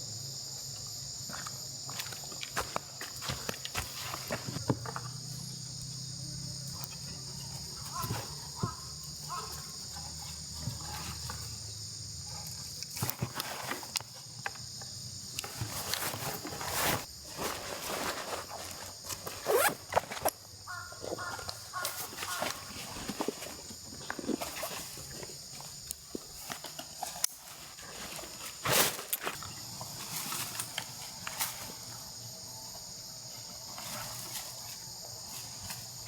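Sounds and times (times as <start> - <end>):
high insect drone: 0.0 - 36.0
footsteps: 1.3 - 5.1
rustles and clicks: 12.3 - 20.4.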